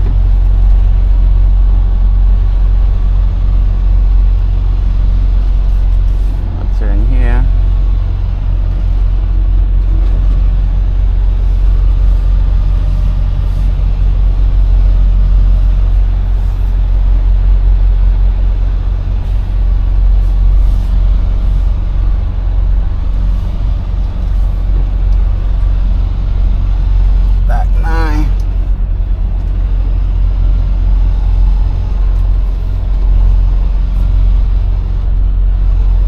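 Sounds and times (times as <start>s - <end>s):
truck diesel engine rumbling: 0.0s - 36.0s.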